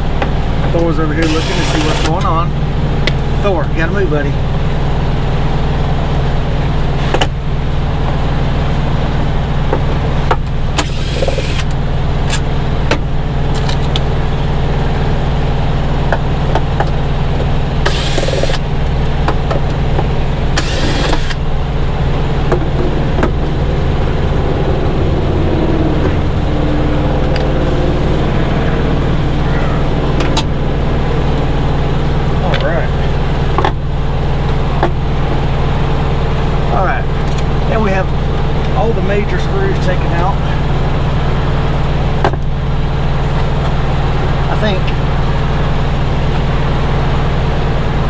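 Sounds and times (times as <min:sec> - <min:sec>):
idling engine drone: 0:00.0 - 0:48.0.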